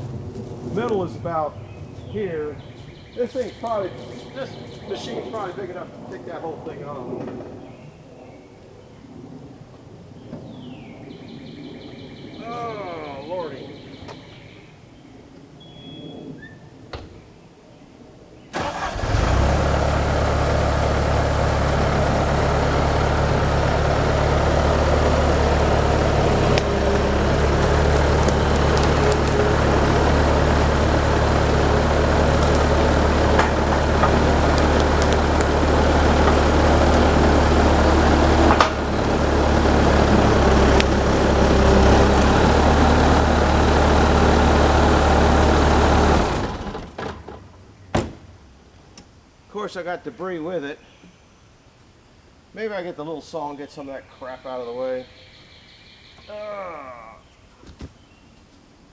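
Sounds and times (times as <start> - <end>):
loud machine engine running: 18.6 - 47.2.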